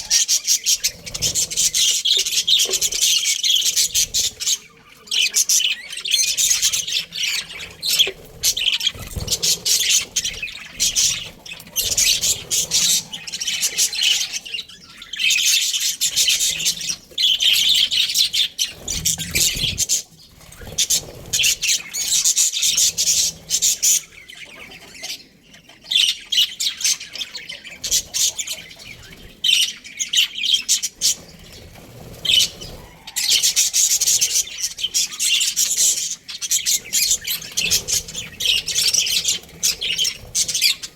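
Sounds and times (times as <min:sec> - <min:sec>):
budgerigars chattering and chirping: 0:00.0 - 0:40.9.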